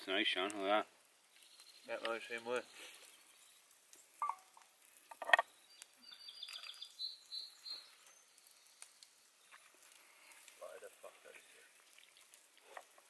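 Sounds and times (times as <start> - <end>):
small bird singing: 5.4 - 8.8.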